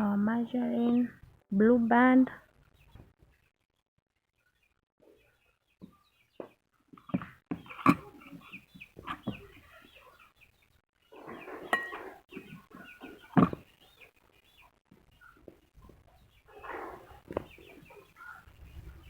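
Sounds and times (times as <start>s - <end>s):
birds calling: 5.1s - 19.0s
spoon scraping in mixing bowl: 11.2s - 13.6s.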